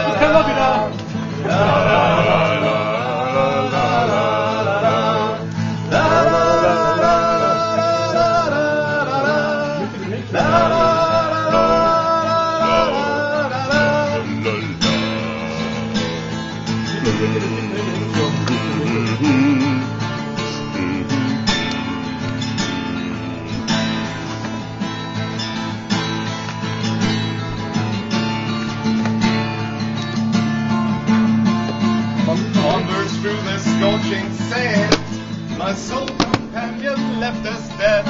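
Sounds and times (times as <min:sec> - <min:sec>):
man singing: 0:00.0 - 0:23.8, 0:32.3 - 0:38.0
acoustic guitar: 0:00.0 - 0:38.0.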